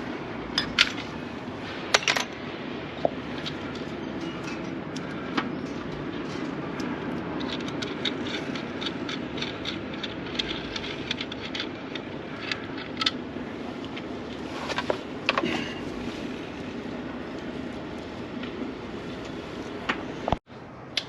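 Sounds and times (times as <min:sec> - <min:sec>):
low background rumble: 0:00.0 - 0:21.0
hand tools clicking and tapping: 0:03.0 - 0:13.2.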